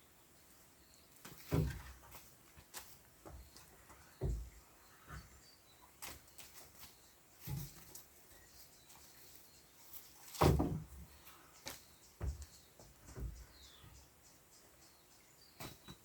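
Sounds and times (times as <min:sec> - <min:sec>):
dull thumps and knocks: 0:01.3 - 0:02.2, 0:03.2 - 0:05.3, 0:10.3 - 0:11.1, 0:12.2 - 0:14.0.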